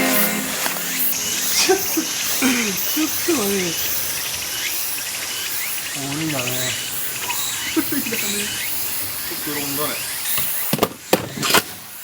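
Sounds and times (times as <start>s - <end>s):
people talking: 0.0s - 3.9s, 6.0s - 6.8s, 7.7s - 8.6s, 9.3s - 10.0s
insects trilling: 1.1s - 12.0s.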